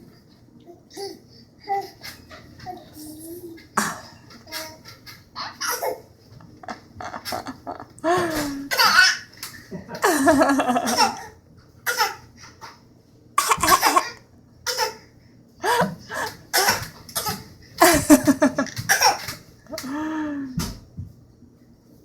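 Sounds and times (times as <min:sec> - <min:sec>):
child laughing: 0:01.8 - 0:09.2, 0:10.0 - 0:11.3, 0:13.5 - 0:14.2, 0:15.6 - 0:19.9
child coughing: 0:08.3 - 0:09.2, 0:10.8 - 0:12.2, 0:13.4 - 0:15.0, 0:15.7 - 0:18.2, 0:18.9 - 0:19.3.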